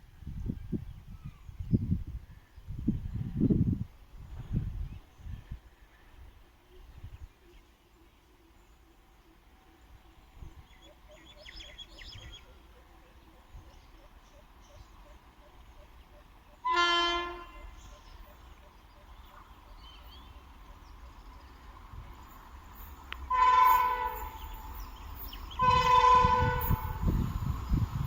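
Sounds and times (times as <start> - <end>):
locomotive horn blast: 16.6 - 18.2, 23.1 - 27.4.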